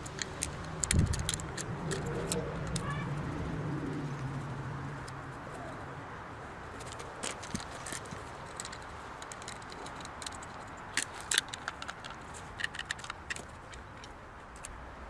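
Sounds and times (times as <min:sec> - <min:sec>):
small metal parts clinking: 0:00.0 - 0:02.9, 0:06.8 - 0:14.7.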